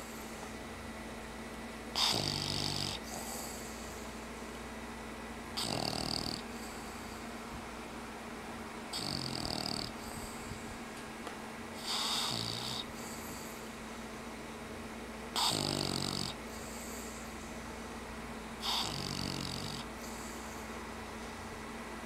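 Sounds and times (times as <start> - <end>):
dog snoring: 1.9 - 4.2, 5.5 - 7.4, 8.9 - 10.7, 11.8 - 13.7, 15.4 - 17.4, 18.6 - 20.7.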